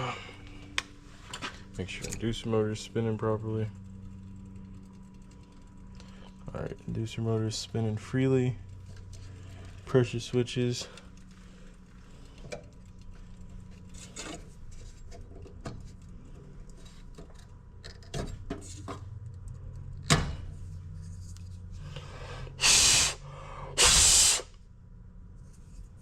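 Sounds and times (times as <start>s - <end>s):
low steady hum: 0.0s - 23.9s
small clicks of handled parts: 8.8s - 20.2s
air hissing through tubing: 21.9s - 24.6s.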